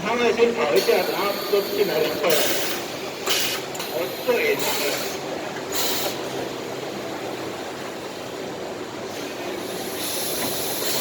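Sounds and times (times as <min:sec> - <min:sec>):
high air hiss: 0:09.1 - 0:11.0.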